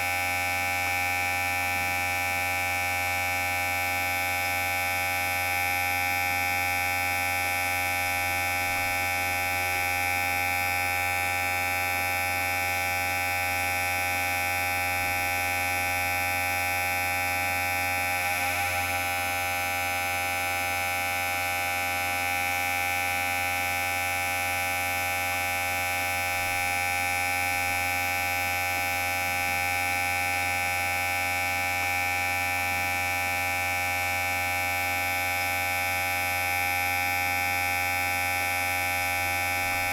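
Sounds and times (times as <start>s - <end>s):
electric hair clipper buzzing: 5.5s - 20.7s, 25.7s - 30.6s, 33.4s - 39.9s.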